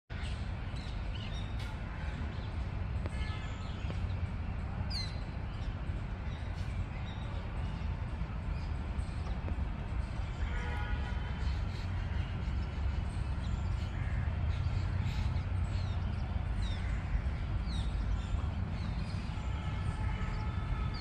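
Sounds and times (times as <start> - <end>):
birds calling: 10.4 - 21.0.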